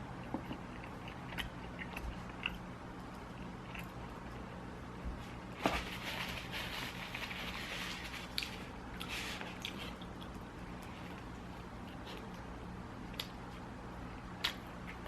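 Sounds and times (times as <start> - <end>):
wet chewing: 0.2 - 4.5
soft squishy rustling: 5.1 - 12.4.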